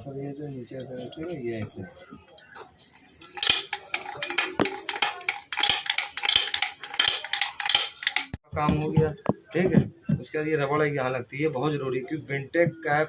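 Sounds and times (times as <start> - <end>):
metal parts and tools clinking: 2.9 - 8.4.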